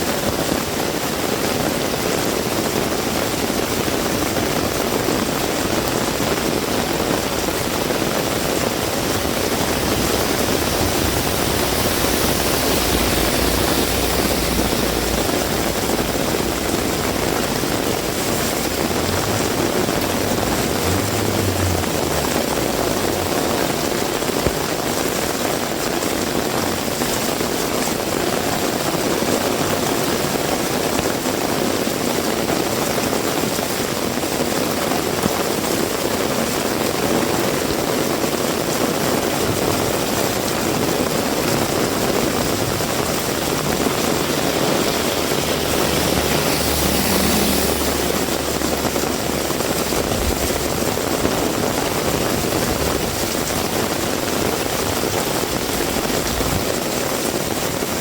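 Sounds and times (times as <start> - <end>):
heavy rain pouring: 0.0 - 58.0
low rumble: 3.7 - 24.6, 41.1 - 56.6.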